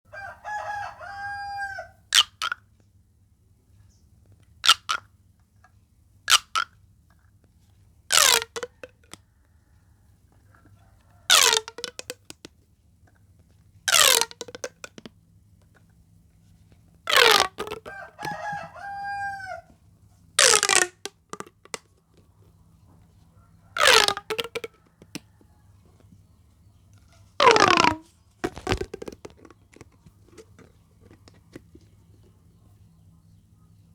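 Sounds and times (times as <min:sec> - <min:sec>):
pop tube zipping pops: 0:08.1 - 0:08.8, 0:11.3 - 0:12.2, 0:13.9 - 0:15.0, 0:17.1 - 0:17.9, 0:20.4 - 0:21.8, 0:23.8 - 0:24.7, 0:27.4 - 0:30.7.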